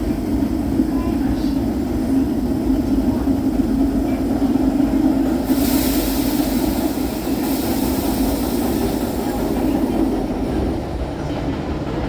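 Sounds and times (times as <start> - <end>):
electric train hum and rumble: 0.0 - 12.0
higher hiss: 5.4 - 10.1.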